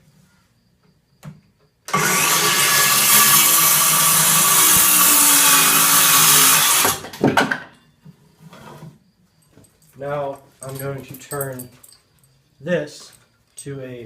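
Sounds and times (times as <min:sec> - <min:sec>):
power saw cutting wood: 0:01.9 - 0:07.1.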